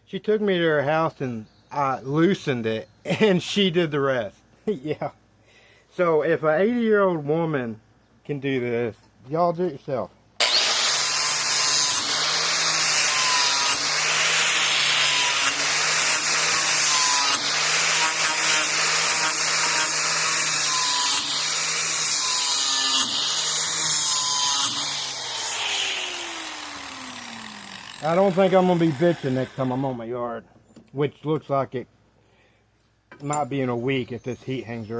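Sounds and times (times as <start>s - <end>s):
grinder on steel blade: 10.4s - 30.0s
motor spinning down whine: 20.4s - 29.9s.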